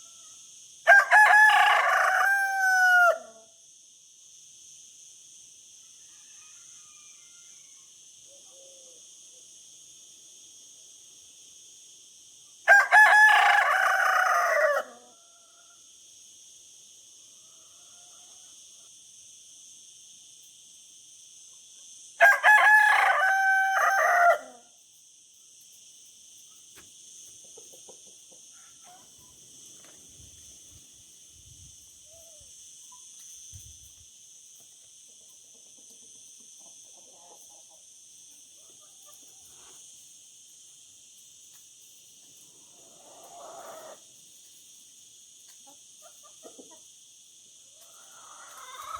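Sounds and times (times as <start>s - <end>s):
rooster crowing: 0.9s - 3.5s, 6.0s - 8.0s, 12.7s - 15.8s, 22.2s - 24.7s.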